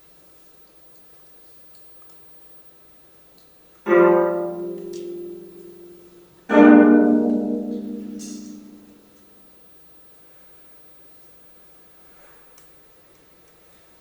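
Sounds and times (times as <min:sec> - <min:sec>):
low plucked zither chords: 0:03.9 - 0:08.9.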